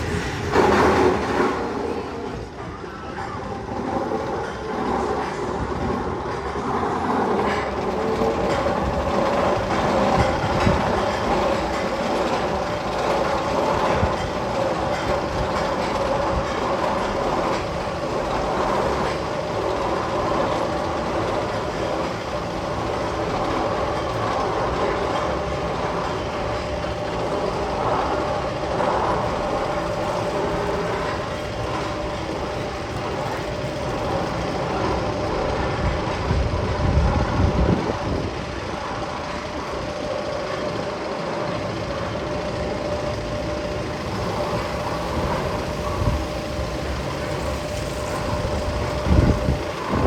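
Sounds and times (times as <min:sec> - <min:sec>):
constant hum: 0:00.0 - 0:50.0
train-like rumble and clatter: 0:00.0 - 0:50.0.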